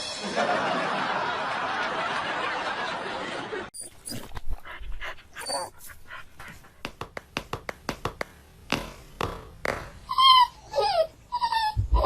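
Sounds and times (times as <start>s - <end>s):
dog whimpering and sniffing: 3.8s - 6.8s, 10.1s - 12.0s.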